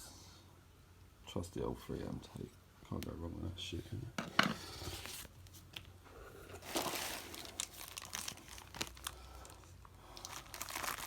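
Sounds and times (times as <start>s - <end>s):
packaging crinkling and rustling: 4.6s - 11.0s.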